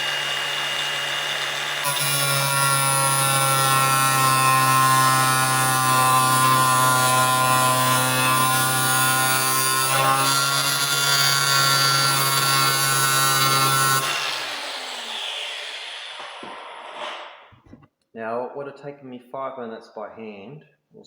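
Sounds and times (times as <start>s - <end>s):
angle grinder grinding metal: 0.0s - 17.5s
grinder spinning down: 12.1s - 17.4s.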